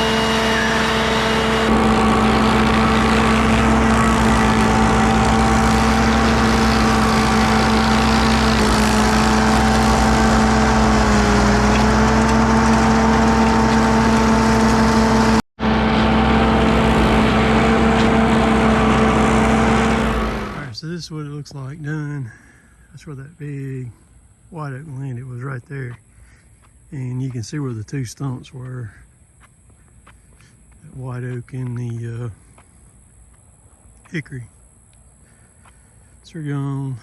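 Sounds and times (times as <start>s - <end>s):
machine engine running: 0.0s - 20.8s.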